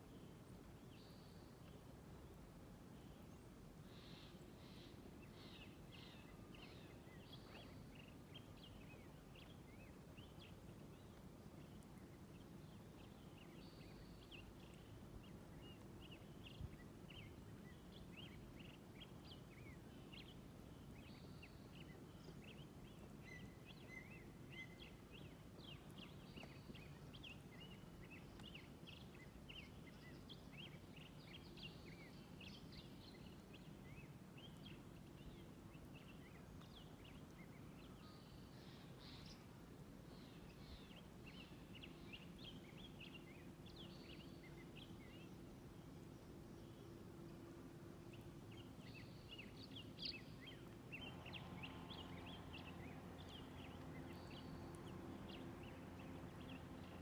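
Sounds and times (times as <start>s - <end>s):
small birds chirping: 3.0s - 57.0s
low background rumble: 33.8s - 57.0s.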